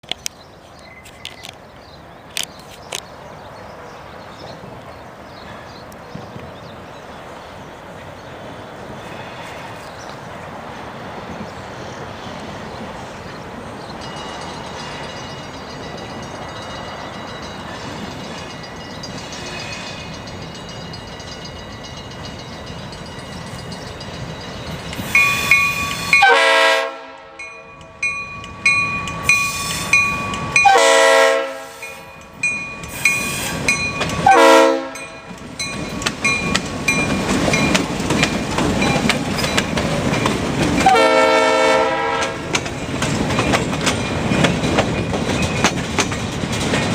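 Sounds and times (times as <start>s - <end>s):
diesel locomotive rumbling: 0.0s - 46.9s
train air horn blasts: 25.2s - 27.6s, 29.3s - 32.1s, 34.2s - 35.2s, 40.8s - 42.4s.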